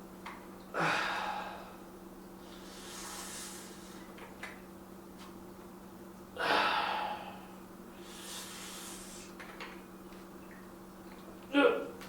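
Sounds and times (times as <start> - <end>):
steady low hum: 0.0 - 12.0
loud forceful exhale: 2.5 - 4.1, 8.0 - 9.3
man breathing hard: 6.4 - 9.3.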